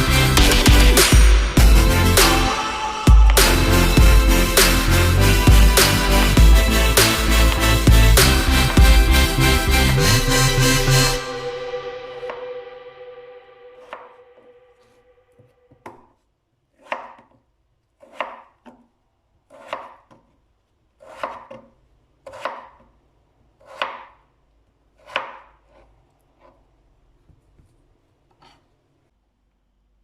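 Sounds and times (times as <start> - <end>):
knife cutting on board: 19.5 - 20.3, 21.0 - 21.7, 25.0 - 26.6.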